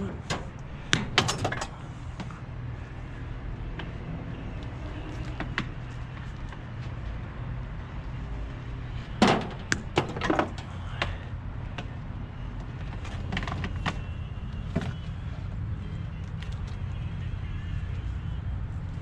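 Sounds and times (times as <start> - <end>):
steady low hum: 0.0 - 19.0
clicks and knocks of metal scrap: 0.3 - 1.8.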